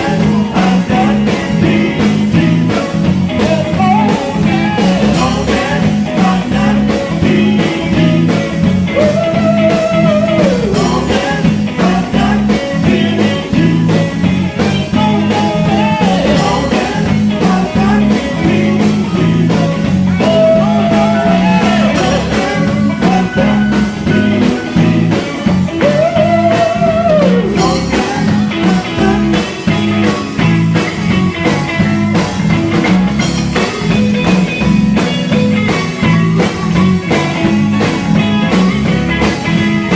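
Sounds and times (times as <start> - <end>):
electric guitar pitch bends: 0.0 - 39.9
gospel band playing: 0.0 - 39.9.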